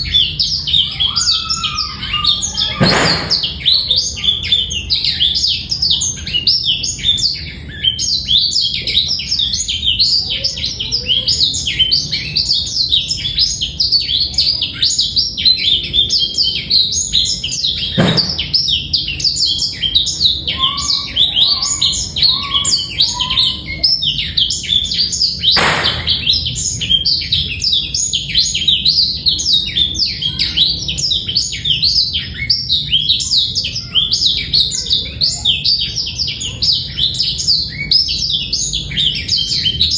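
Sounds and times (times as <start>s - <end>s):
brief thumps: 2.8s - 3.8s, 18.0s - 18.6s, 25.6s - 26.4s.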